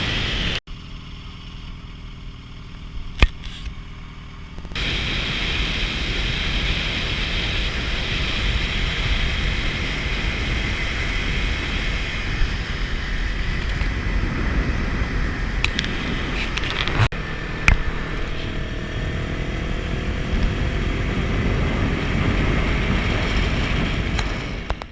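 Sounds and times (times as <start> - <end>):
motorcycle engine running: 0.0 - 24.9
wind rush on microphone: 4.6 - 24.9.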